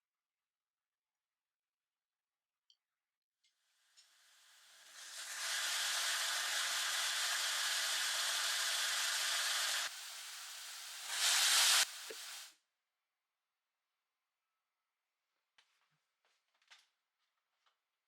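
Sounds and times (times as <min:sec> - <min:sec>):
steady hissing rush: 0:04.2 - 0:12.5.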